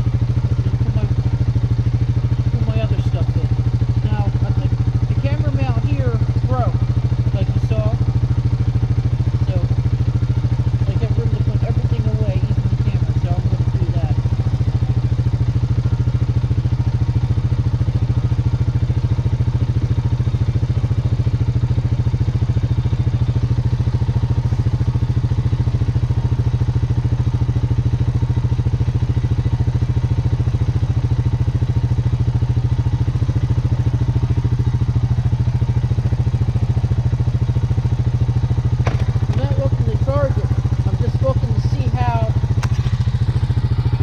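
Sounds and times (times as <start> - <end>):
atv engine idling: 0.0 - 44.0.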